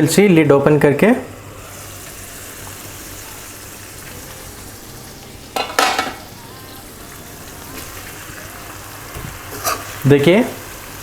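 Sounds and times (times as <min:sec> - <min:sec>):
chicken sizzling in a pan: 0:00.0 - 0:11.0
metal clattering against pan: 0:05.6 - 0:06.2.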